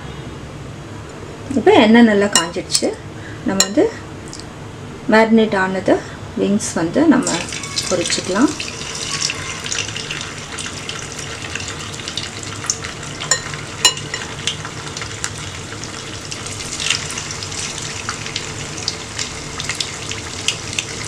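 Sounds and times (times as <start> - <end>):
chicken wings deep-frying in oil: 7.2 - 21.0.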